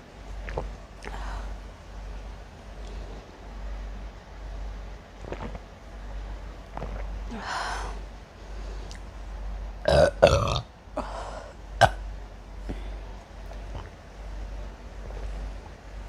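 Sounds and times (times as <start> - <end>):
person burping: 9.8 - 10.7, 11.8 - 12.0.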